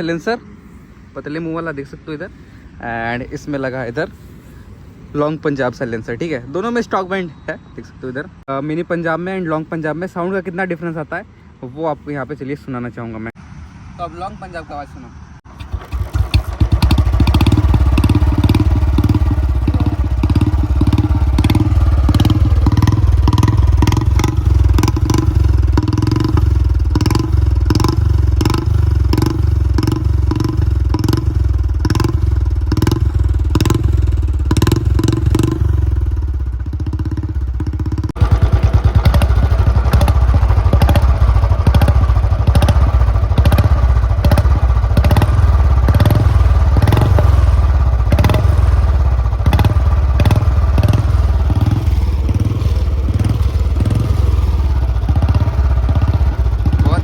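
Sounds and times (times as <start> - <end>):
motorcycle engine thumping: 15.6 - 57.0.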